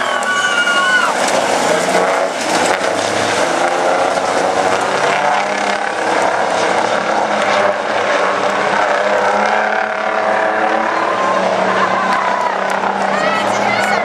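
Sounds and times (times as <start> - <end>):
racing truck diesel engines: 0.0 - 14.0.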